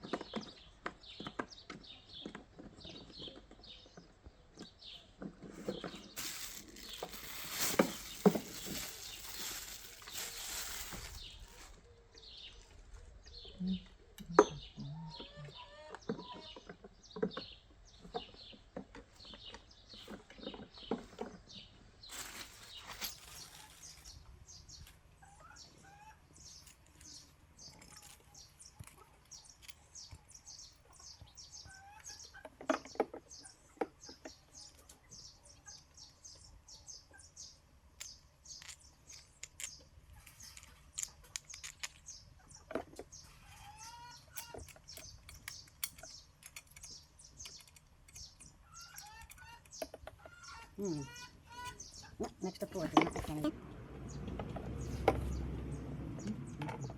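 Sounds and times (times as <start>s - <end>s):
small birds chirping: 0.0s - 56.9s
brief rustle: 5.4s - 11.8s, 22.1s - 25.0s
chickens clucking: 13.5s - 16.6s, 25.1s - 26.4s, 42.3s - 44.6s, 48.7s - 53.5s.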